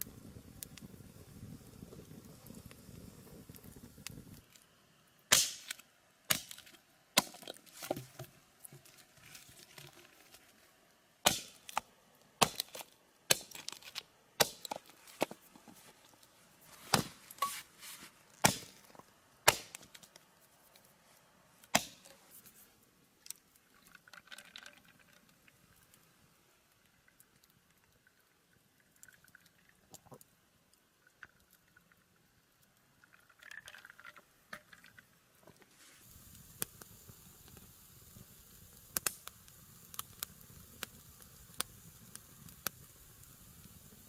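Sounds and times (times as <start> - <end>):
chopping against wood: 11.3 - 11.6, 18.4 - 18.7, 19.5 - 19.8, 21.8 - 22.0.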